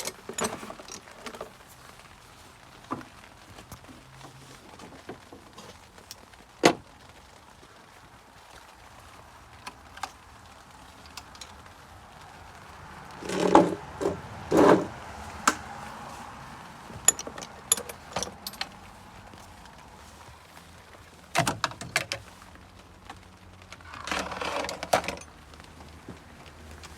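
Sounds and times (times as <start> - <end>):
clattering and scraping: 0.0 - 1.7, 13.2 - 15.7, 16.8 - 18.9, 23.7 - 25.3
tools clicking and knocking: 17.0 - 18.8.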